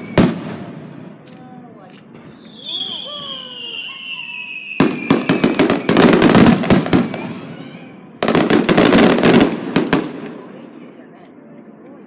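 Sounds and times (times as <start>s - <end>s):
firework whistle gliding downward: 0.0s - 0.4s, 2.3s - 7.9s
firework crackling pops: 0.0s - 7.5s.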